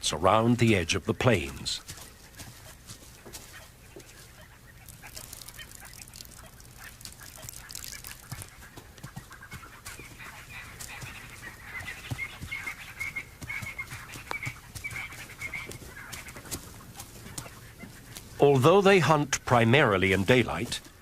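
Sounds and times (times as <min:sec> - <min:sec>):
bird-like chirping and twittering: 0:00.3 - 0:21.0.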